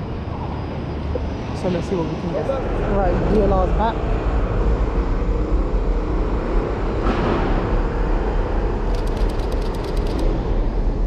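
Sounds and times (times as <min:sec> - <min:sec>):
street traffic: 0:00.0 - 0:11.0
camera shutter clicks: 0:08.9 - 0:10.2.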